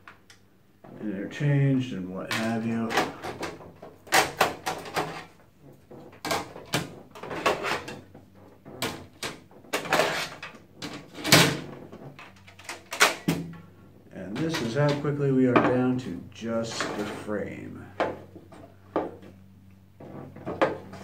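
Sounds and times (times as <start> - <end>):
computer case panels clattering: 2.2 - 16.0.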